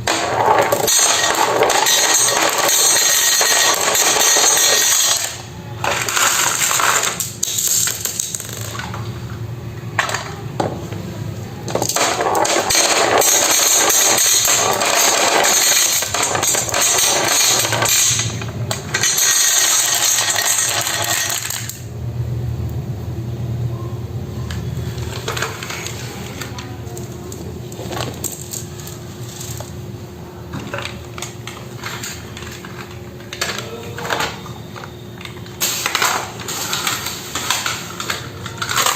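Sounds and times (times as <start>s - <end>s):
marbles rattling down a marble run: 0.1s - 9.0s, 11.8s - 21.8s.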